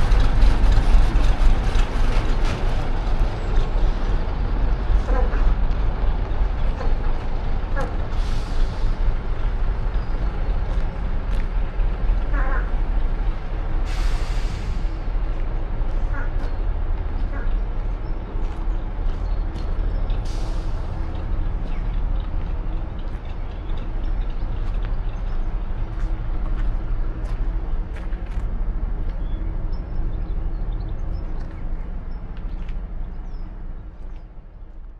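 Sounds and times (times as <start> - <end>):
diesel bus engine running: 0.0 - 34.9
air hiss: 13.8 - 14.9.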